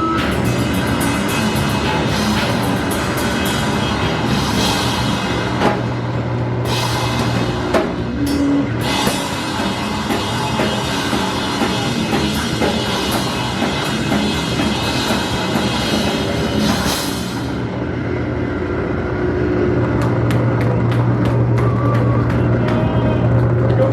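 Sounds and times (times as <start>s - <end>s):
live rock band playing: 0.0s - 17.8s
drum kit: 0.0s - 17.9s.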